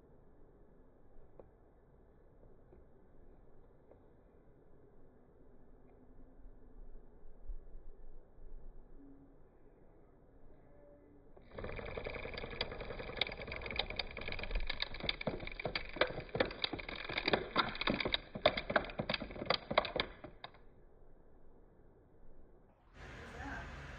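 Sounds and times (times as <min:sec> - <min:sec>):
engine running: 0:11.5 - 0:20.5
rapid irregular clicking clatter: 0:11.5 - 0:20.6.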